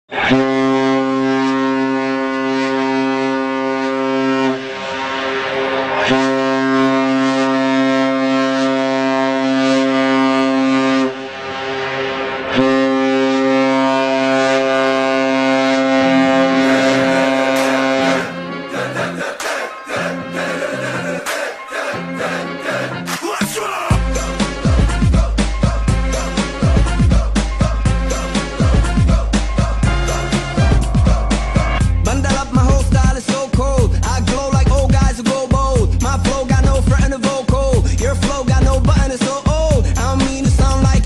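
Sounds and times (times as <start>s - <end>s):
low goal horn blasts: 0.2s - 11.7s, 12.5s - 18.6s, 29.8s - 32.5s.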